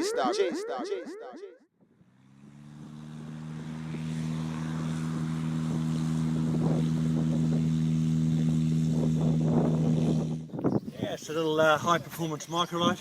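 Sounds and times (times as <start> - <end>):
microlight aircraft engine and propeller: 1.9 - 10.8.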